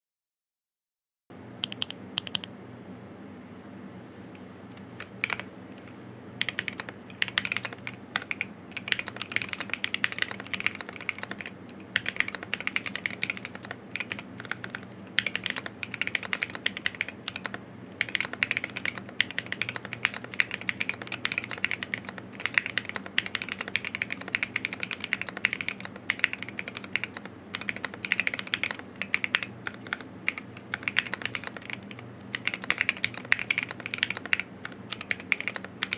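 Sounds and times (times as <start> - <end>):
typing on mechanical keyboard: 1.6 - 2.5, 4.7 - 5.5, 6.4 - 35.9.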